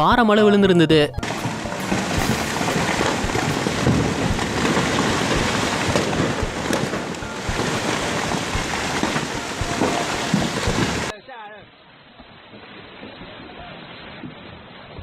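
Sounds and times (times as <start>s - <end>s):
stones knocking: 1.2s - 11.1s
torrent rushing: 1.2s - 11.1s.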